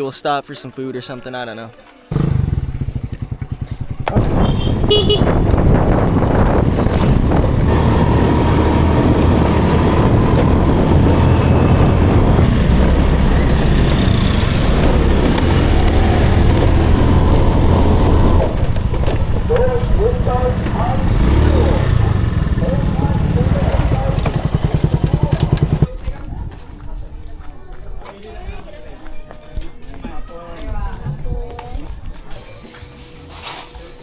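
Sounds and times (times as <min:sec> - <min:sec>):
motor scooter engine: 0:02.1 - 0:25.9
wind noise on microphone: 0:03.5 - 0:24.4
short horn beep: 0:04.2 - 0:05.4.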